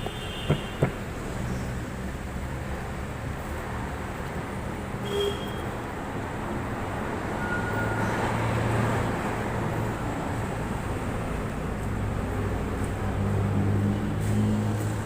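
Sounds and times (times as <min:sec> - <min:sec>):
traffic rumble: 0:00.0 - 0:15.0.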